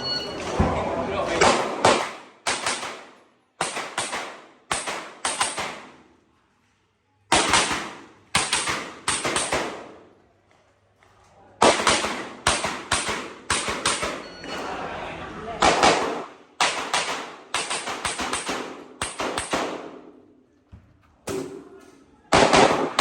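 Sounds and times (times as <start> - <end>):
handgun shots: 1.4 - 5.9, 7.3 - 9.9, 11.6 - 14.2, 15.6 - 19.9.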